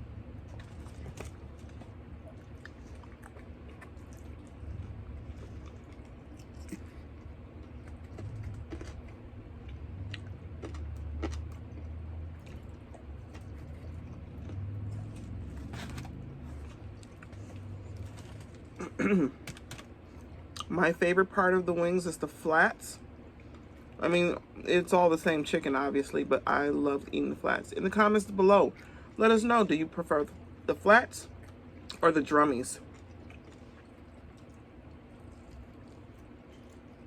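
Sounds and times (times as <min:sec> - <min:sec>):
chewing and biting food: 0:00.0 - 0:20.7, 0:31.3 - 0:37.0.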